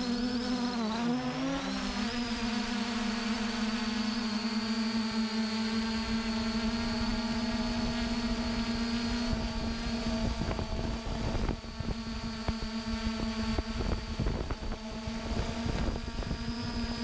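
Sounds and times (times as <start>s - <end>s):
motor hum: 0.0s - 17.0s
wind rumbling on microphone: 6.1s - 17.0s.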